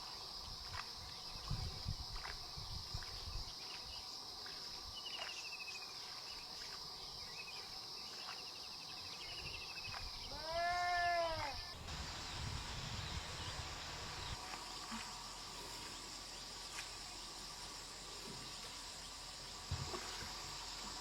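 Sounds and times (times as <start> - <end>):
insects droning: 0.0 - 21.0
arched animal call: 10.3 - 11.8.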